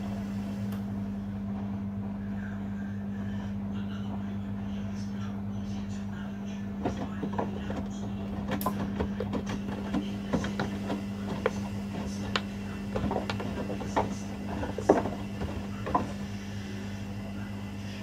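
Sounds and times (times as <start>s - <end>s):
washing machine motor hum: 0.0s - 18.0s
laundry tumbling in drums: 6.6s - 17.0s.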